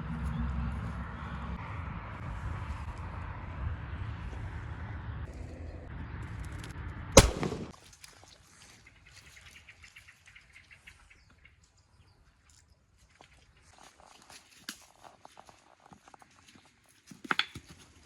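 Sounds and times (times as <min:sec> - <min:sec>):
gunshot with echo: 0:07.2 - 0:07.7.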